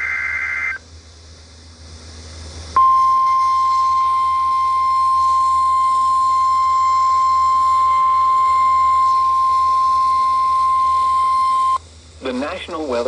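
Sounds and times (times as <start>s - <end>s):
steady high alarm tone: 0.0s - 0.8s, 2.8s - 11.8s.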